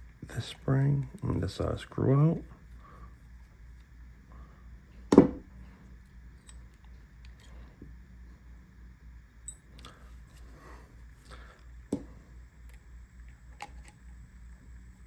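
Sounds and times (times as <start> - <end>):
small metal clicks and clinks: 9.4 - 10.0.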